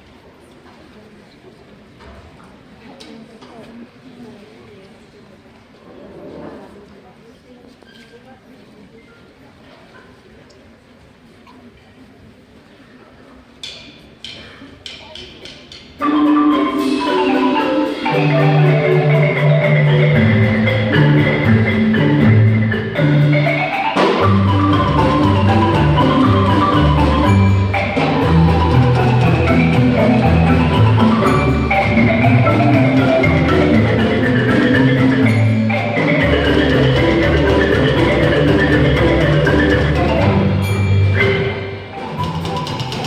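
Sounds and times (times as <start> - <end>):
marimbas playing fast piece: 14.9 - 43.0.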